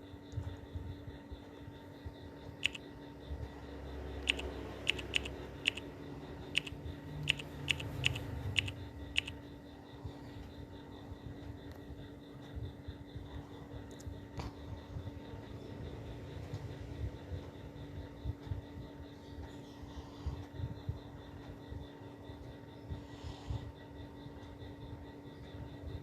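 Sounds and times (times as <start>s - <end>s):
faint low rumble: 0.0s - 26.0s
sharp clicks: 2.6s - 2.8s, 4.2s - 5.9s, 6.5s - 9.4s.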